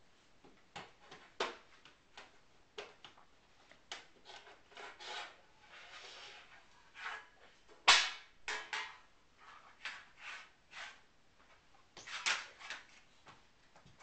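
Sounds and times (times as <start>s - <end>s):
objects knocking and clattering: 7.8s - 9.1s.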